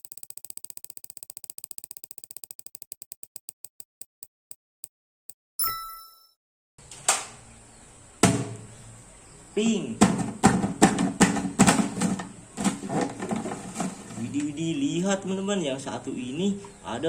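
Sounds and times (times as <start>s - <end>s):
spinning wheel ticking: 0.0s - 4.2s
short bright chime: 5.6s - 6.3s
knocks: 10.0s - 14.0s.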